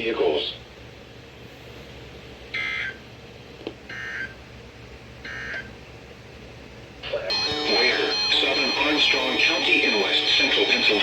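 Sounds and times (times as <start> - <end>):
digital data bursts: 7.3 - 11.0.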